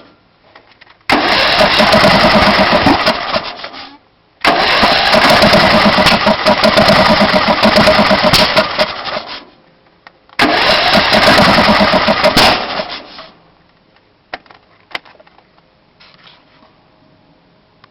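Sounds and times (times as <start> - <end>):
mower engine cranking: 1.1 - 3.8, 4.4 - 9.4, 10.4 - 13.3.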